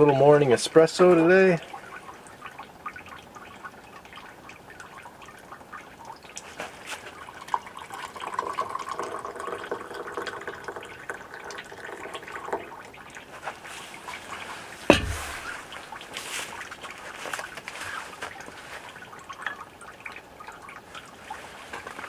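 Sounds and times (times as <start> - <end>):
espresso pouring and dripping: 7.1 - 13.5.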